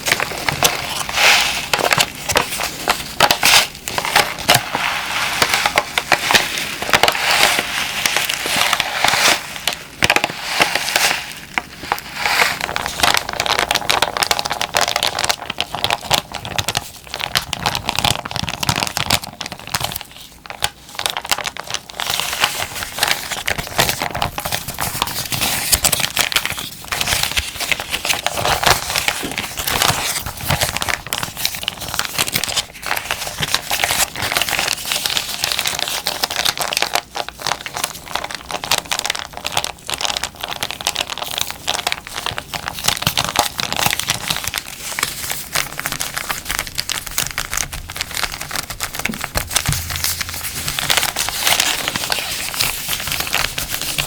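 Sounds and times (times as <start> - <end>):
plastic bag crinkling: 0.0 - 54.0.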